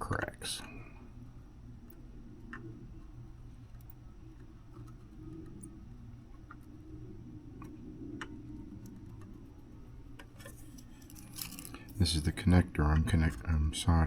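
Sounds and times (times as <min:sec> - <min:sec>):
steady low hum: 0:00.0 - 0:14.0
soldering iron ticks: 0:12.4 - 0:13.6.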